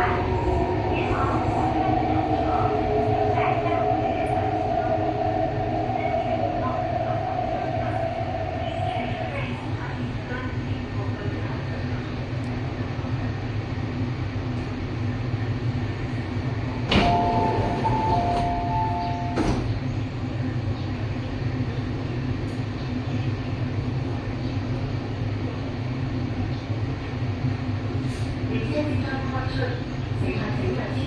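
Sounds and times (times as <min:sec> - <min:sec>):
train car rumble: 0:00.0 - 0:27.0.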